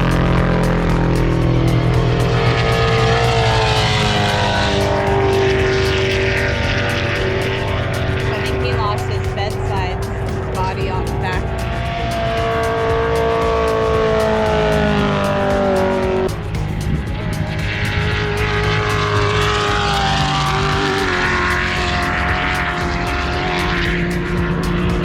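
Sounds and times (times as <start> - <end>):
race vehicle engines passing: 0.0 - 25.0
rushing noise: 0.0 - 25.0.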